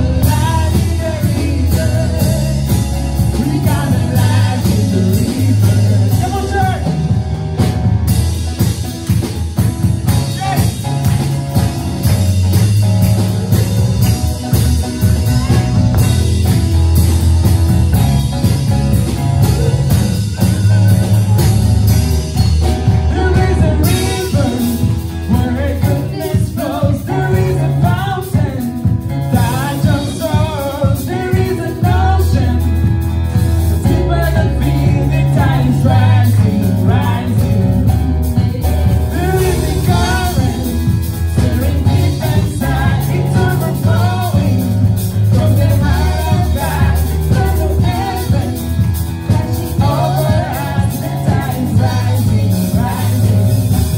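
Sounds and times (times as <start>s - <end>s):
band music with singing: 0.0s - 53.9s.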